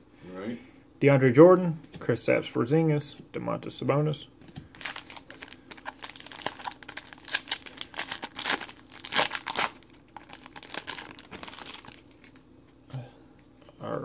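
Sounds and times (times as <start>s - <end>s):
foil wrapper tearing and crinkling: 4.8s - 12.4s.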